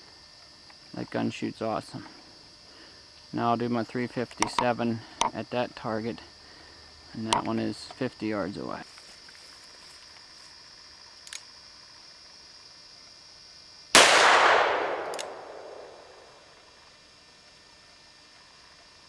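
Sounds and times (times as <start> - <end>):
high insect drone: 0.0 - 19.0
revolver gunshot: 14.0 - 16.5.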